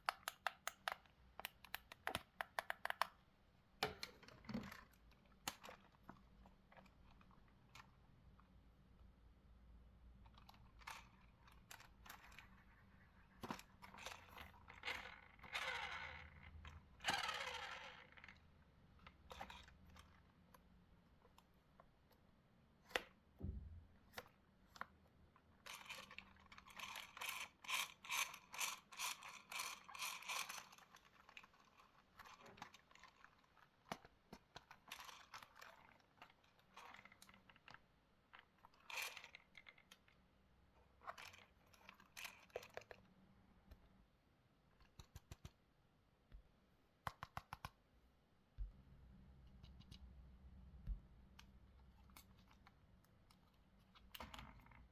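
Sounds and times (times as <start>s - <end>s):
plastic parts clicking: 0.0s - 3.2s.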